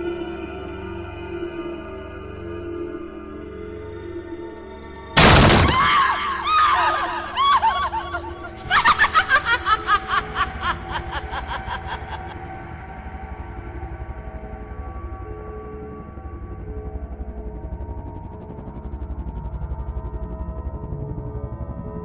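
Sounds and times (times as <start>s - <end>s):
dark ambient music drone: 0.0s - 22.0s
loud crash: 5.2s - 7.4s
high-pitched cackling cries: 5.2s - 12.4s.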